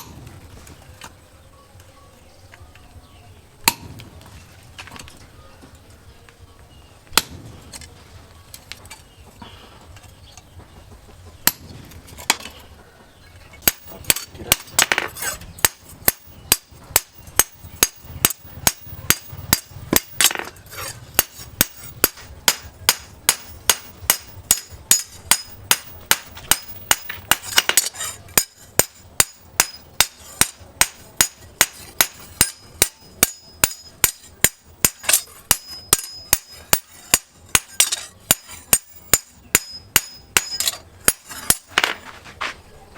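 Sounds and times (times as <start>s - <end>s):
hammer striking steel: 3.6s - 4.0s, 7.2s - 7.6s, 11.4s - 12.5s, 13.6s - 42.1s.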